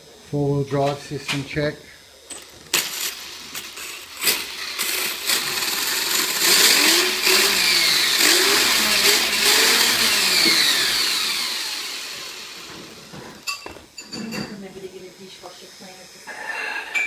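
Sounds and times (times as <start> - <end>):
electric motor whine: 2.8 - 13.4.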